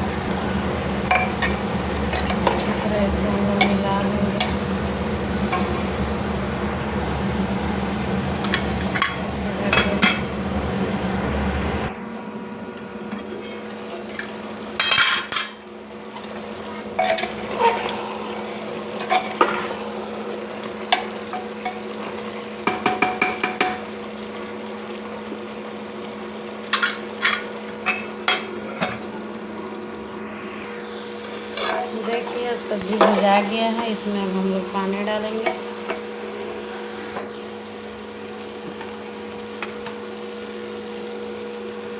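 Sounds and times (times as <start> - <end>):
low background hum: 0.0 - 40.6
metal spoon scraping a pot: 17.0 - 19.7
spoon tapping pot: 22.6 - 23.8.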